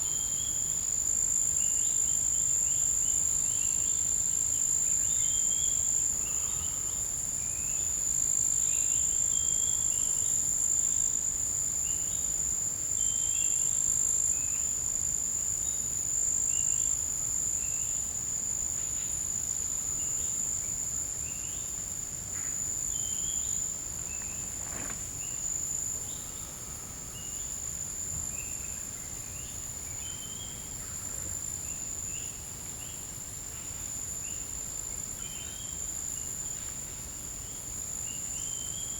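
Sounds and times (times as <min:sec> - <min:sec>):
insects chirping: 0:00.0 - 0:38.9
insects high-pitched drone: 0:00.0 - 0:38.9.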